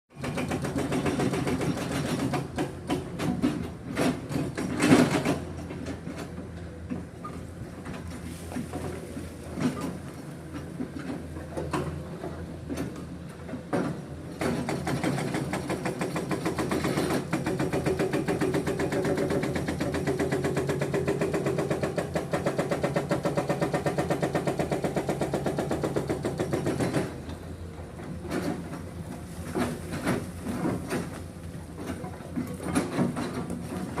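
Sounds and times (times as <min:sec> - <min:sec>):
excavator engine running: 0:00.2 - 0:34.0
hydraulic breaker hammering stone: 0:13.9 - 0:27.2.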